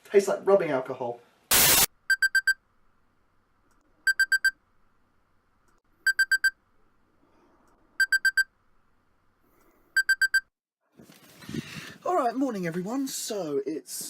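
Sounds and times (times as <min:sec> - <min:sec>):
alarm clock beeping: 0:02.1 - 0:02.6, 0:04.1 - 0:04.6, 0:06.1 - 0:06.6, 0:08.0 - 0:08.5, 0:10.0 - 0:10.5.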